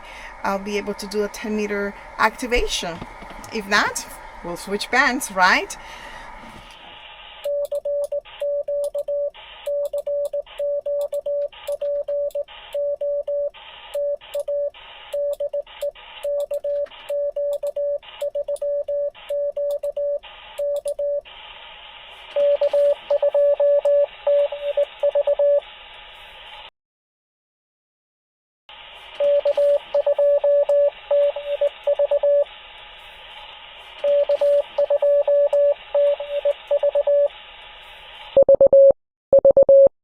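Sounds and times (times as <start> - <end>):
radio receiver hiss: 0.1 - 7.5, 13.5 - 18.3, 21.3 - 25.0, 28.7 - 38.4
morse code tone: 34.0 - 37.3, 38.4 - 39.9.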